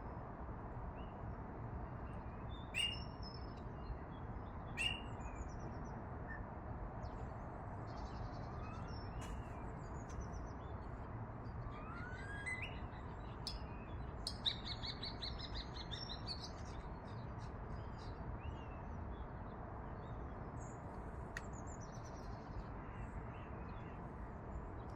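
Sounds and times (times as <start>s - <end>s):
bird trill: 2.8s - 3.1s, 11.7s - 12.9s
birds chirping and whistling: 11.7s - 13.0s.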